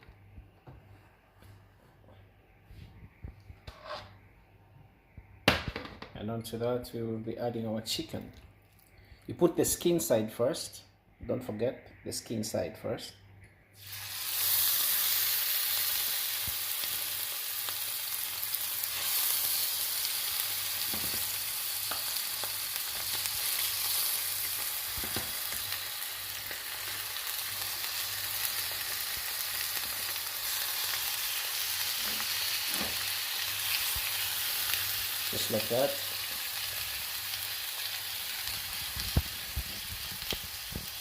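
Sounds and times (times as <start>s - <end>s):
chicken sizzling in frying pan: 13.8s - 41.0s.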